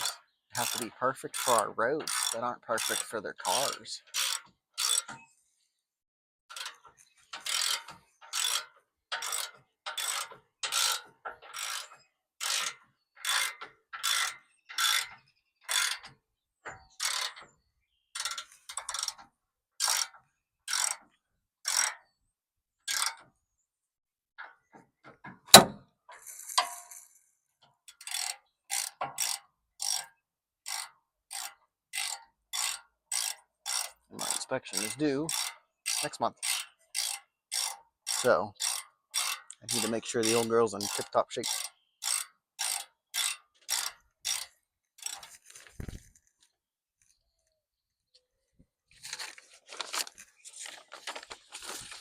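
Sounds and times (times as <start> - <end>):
ratchet wrench clicking: 0.0 - 5.1, 7.4 - 11.0, 11.6 - 15.1, 19.8 - 20.1, 27.9 - 30.1, 30.7 - 45.3.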